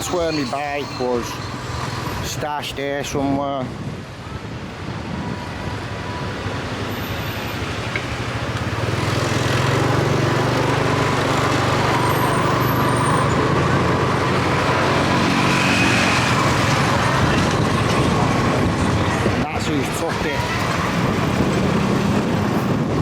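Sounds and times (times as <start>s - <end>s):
road traffic: 0.0s - 23.0s
vehicle engine running close: 8.0s - 19.4s.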